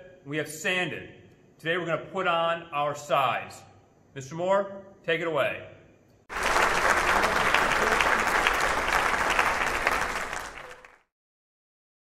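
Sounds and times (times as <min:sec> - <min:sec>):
crowd applause: 0:06.3 - 0:11.1.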